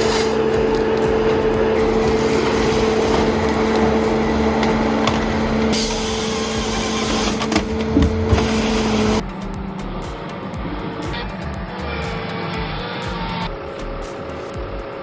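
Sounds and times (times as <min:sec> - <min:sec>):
chainsaw running at full throttle: 0:00.0 - 0:07.5.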